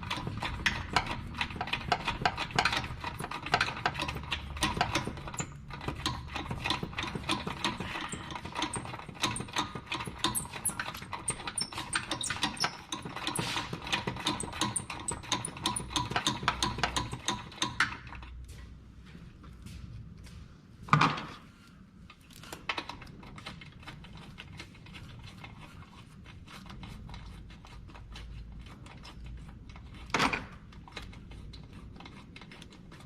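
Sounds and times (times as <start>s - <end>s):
ratchet wrench clicking: 0.6s - 13.5s, 14.2s - 17.2s.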